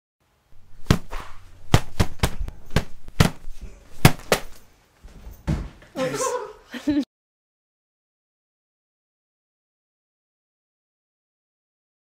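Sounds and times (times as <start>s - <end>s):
phonebook slapped against leg: 0.8s - 4.6s.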